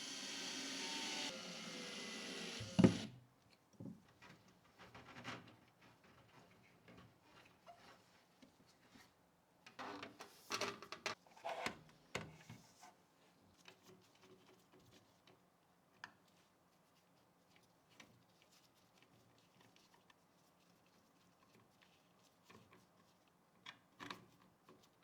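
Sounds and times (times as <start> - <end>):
steady mechanical whir: 0.0 - 3.1.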